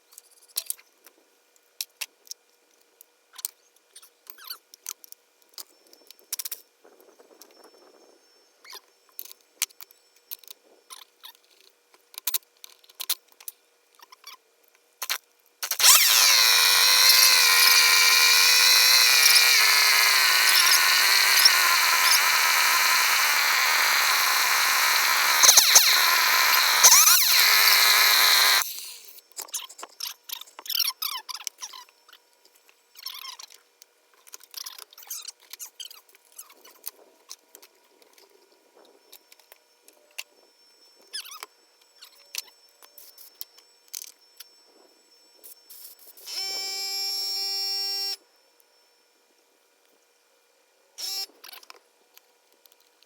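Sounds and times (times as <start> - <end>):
chainsaw running at high speed: 15.6 - 29.1.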